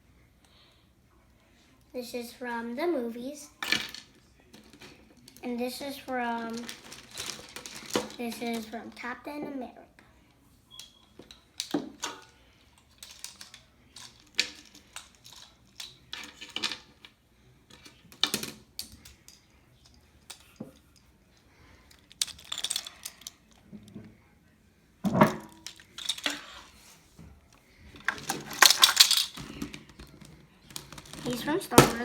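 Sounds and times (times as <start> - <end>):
rustling: 4.5 - 8.9.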